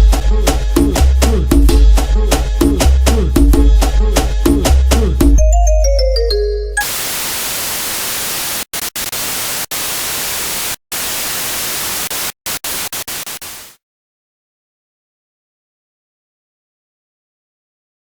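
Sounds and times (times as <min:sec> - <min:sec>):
loud white-noise static: 0:06.8 - 0:13.8.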